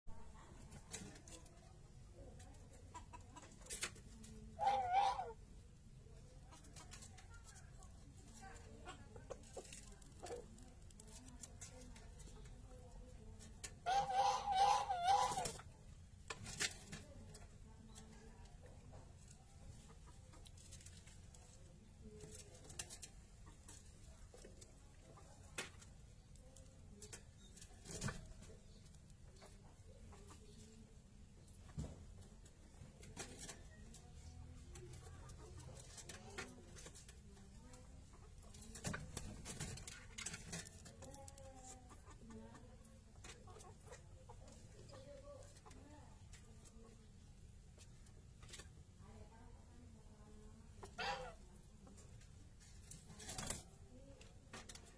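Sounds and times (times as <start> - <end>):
bird clucking calls: 13.8 - 15.6
clicks and rustles in cage: 16.2 - 29.6, 31.6 - 42.2, 52.0 - 54.9.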